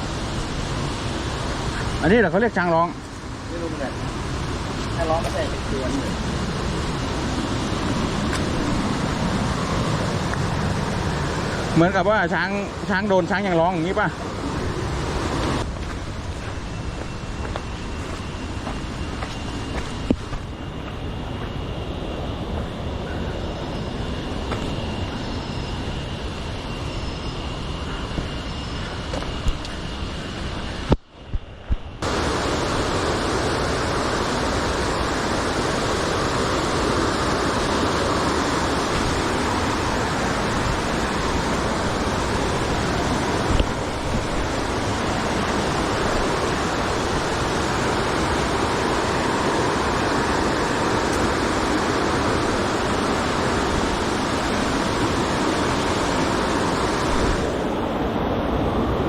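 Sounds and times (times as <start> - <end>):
stream water rushing: 32.0 - 57.7.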